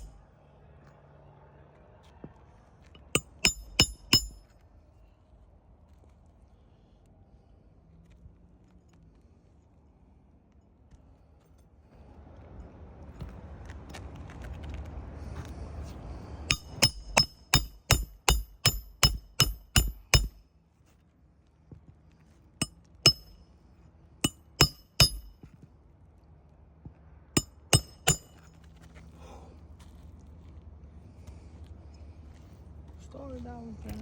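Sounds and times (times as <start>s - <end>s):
ringing metallic clinks: 3.0s - 4.4s, 16.5s - 20.3s, 23.1s - 23.4s, 24.2s - 25.3s, 27.4s - 28.5s.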